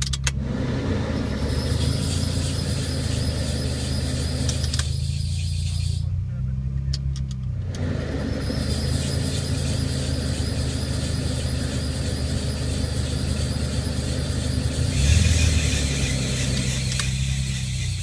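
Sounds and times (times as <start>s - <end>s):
car engine hum: 0.0s - 18.0s
hissing whining noise: 0.3s - 6.2s, 7.7s - 18.0s.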